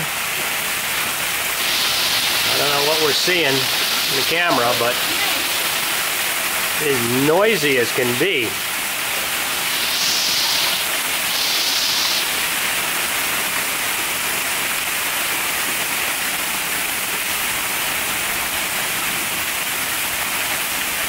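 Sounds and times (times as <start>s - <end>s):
heavy hail clattering: 1.5s - 11.4s.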